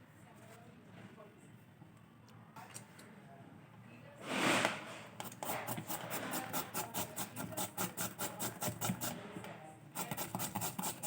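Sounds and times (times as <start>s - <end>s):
kitchen utensil scraping food: 4.2s - 9.4s.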